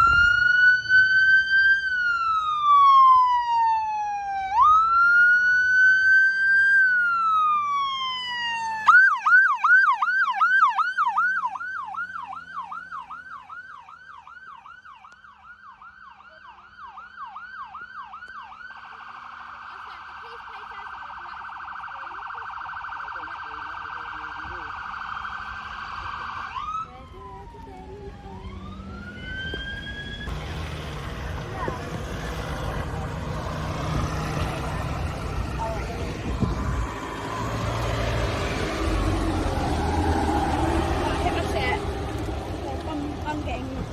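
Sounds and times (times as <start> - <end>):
electronic siren wailing and yelping: 0.0 - 30.3.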